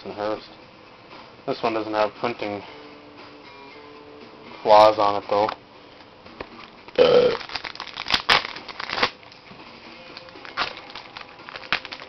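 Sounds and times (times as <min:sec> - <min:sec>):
cards and wrapper crinkling: 0:07.3 - 0:09.4, 0:10.1 - 0:12.0.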